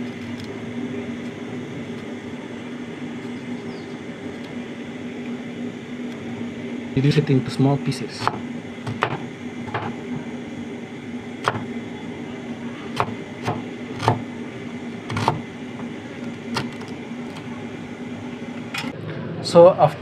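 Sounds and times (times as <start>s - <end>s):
low steady hum: 0.0s - 20.0s
knife chopping on board: 11.4s - 11.7s, 13.0s - 14.2s, 15.1s - 15.4s.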